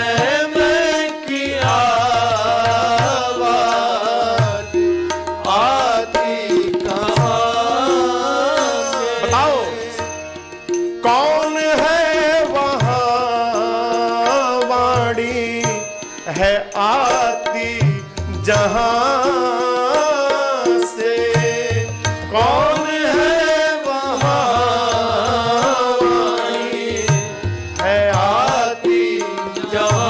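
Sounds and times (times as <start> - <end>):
tabla: 0.0 - 30.0.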